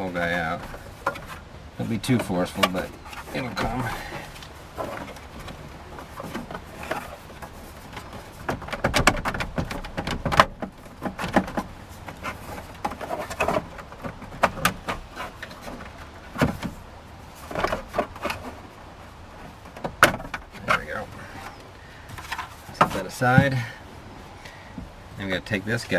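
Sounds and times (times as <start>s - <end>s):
plastic panel clicks and knocks: 2.2s - 16.9s, 19.5s - 23.6s.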